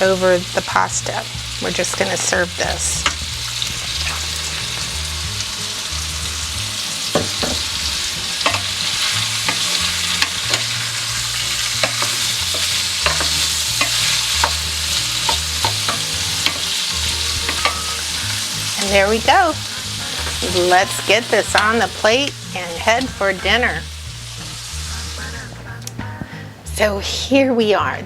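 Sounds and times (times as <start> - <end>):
food sizzling in a frying pan: 0.0 - 25.5
utensil clicking against pan: 8.4 - 8.7, 11.8 - 14.6, 15.2 - 16.7.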